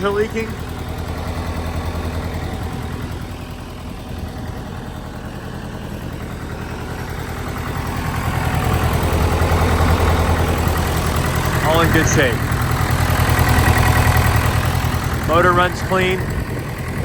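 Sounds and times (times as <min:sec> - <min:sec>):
diesel engine idling: 0:00.0 - 0:17.0.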